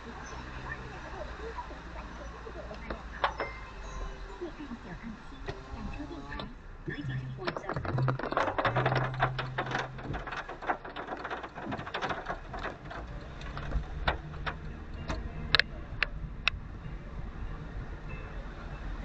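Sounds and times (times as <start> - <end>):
raindrops tapping on hard surface: 7.1 - 16.6.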